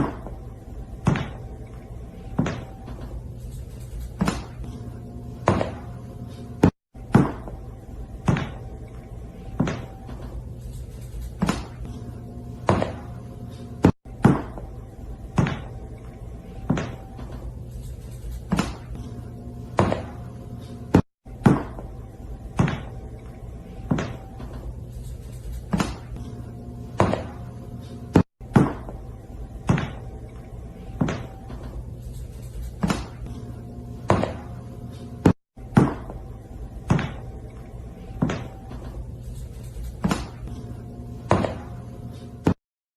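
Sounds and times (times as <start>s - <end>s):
steady low hum: 0.0s - 42.6s.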